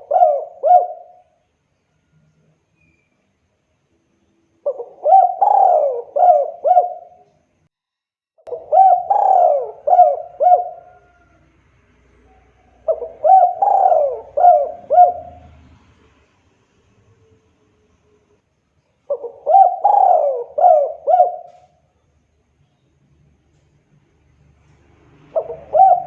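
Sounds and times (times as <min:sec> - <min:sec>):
dove cooing: 0:00.0 - 0:01.4, 0:04.6 - 0:07.3, 0:08.5 - 0:11.5, 0:12.2 - 0:15.6, 0:19.1 - 0:21.8, 0:25.3 - 0:26.0.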